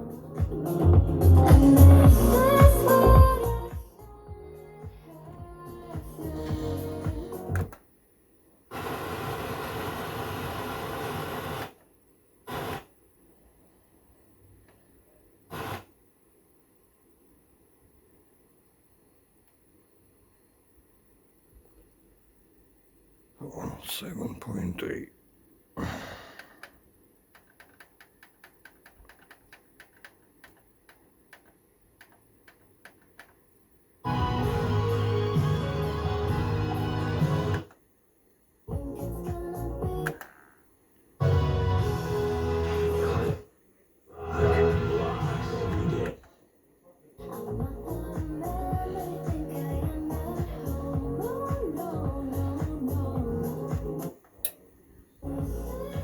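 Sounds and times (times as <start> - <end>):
static hiss from receiver: 7.4 - 34.1, 37.3 - 38.7.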